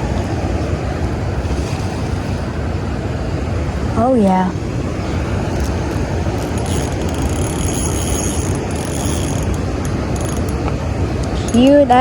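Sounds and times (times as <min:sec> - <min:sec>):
fishing reel drag clicking: 0:05.5 - 0:11.8.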